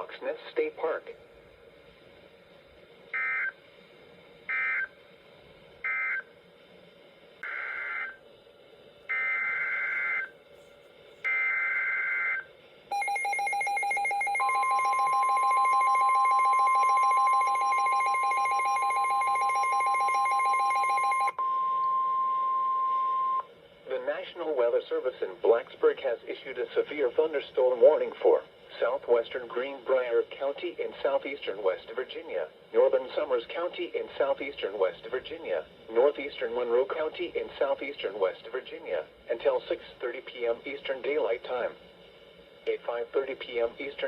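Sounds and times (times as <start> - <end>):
steady attention tone: 9.1 - 23.5.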